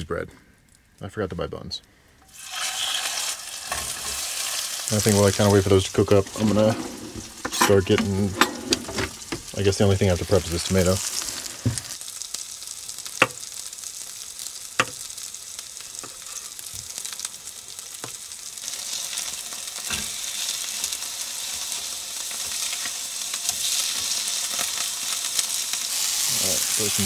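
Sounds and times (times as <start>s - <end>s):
patties sizzling in a frying pan: 2.2s - 27.0s.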